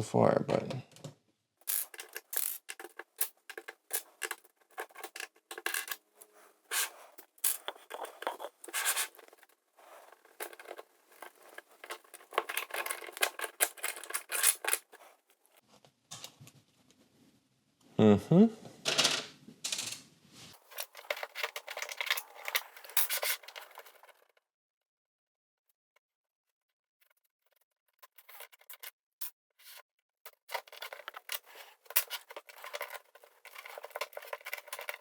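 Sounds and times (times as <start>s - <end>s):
plastic bricks clicking and rattling: 1.6s - 6.0s, 6.7s - 15.1s, 20.6s - 24.3s, 30.3s - 35.0s.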